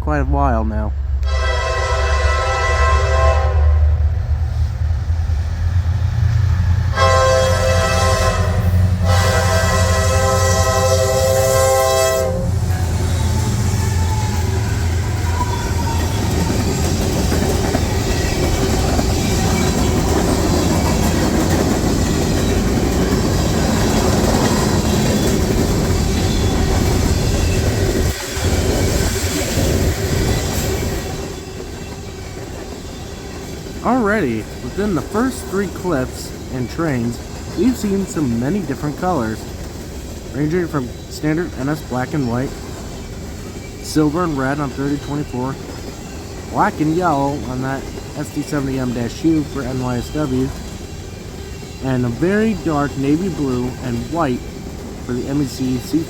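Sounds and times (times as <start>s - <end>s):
train air horn blasts: 1.2s - 4.0s, 6.9s - 15.4s
locomotive engine rumble: 3.9s - 56.0s
wheels rolling on rail: 4.4s - 56.0s.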